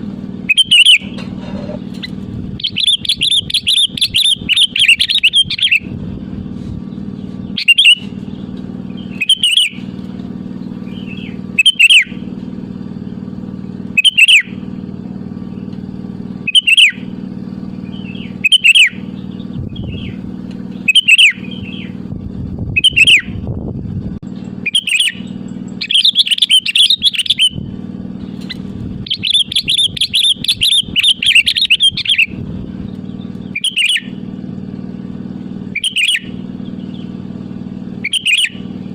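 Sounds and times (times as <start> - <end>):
bulbul calling: 0.0 - 6.0, 6.9 - 12.4, 13.7 - 14.8, 16.4 - 22.1, 22.7 - 23.5, 24.6 - 34.4, 35.6 - 38.9
steady low hum: 0.0 - 38.9
bird rapid chattering: 0.4 - 6.0, 6.9 - 9.9, 10.6 - 12.2, 13.9 - 14.6, 16.4 - 17.1, 17.8 - 22.0, 22.7 - 23.4, 24.6 - 34.2, 35.7 - 37.3, 37.9 - 38.7.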